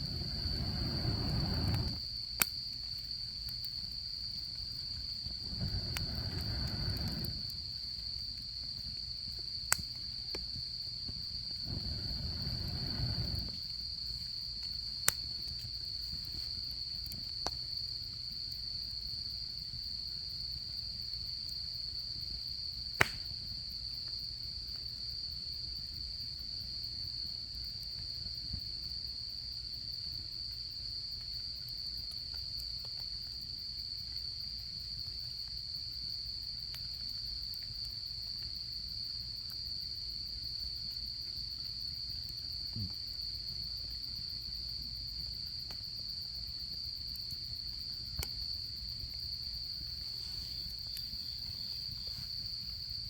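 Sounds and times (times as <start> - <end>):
soft low rush: 0.0 - 2.0, 5.4 - 7.4, 11.6 - 13.5
campfire crackles: 0.0 - 53.0
insects trilling: 0.0 - 53.0.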